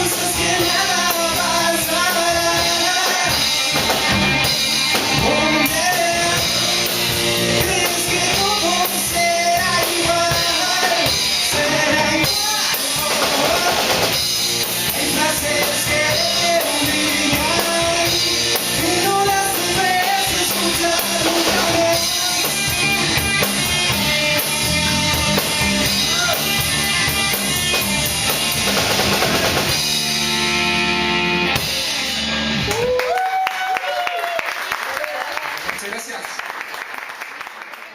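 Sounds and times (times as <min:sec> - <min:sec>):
lead voice singing: 0:00.0 - 0:23.8
live band playing hip hop: 0:00.0 - 0:36.3.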